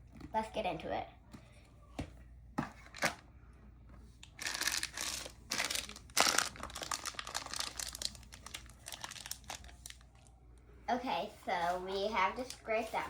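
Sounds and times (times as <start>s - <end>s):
plastic packaging crinkling: 4.3s - 10.3s.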